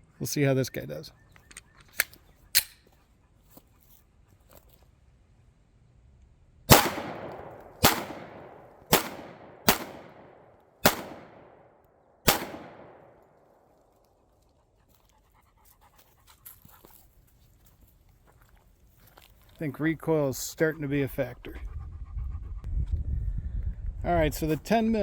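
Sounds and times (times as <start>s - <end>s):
pistol shots with echo: 6.7s - 13.4s.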